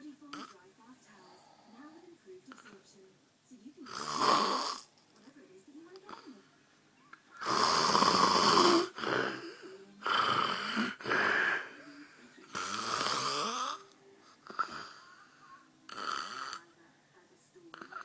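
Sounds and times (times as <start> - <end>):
man snoring: 3.9 - 4.9, 7.4 - 11.9, 12.5 - 15.2, 15.9 - 16.6.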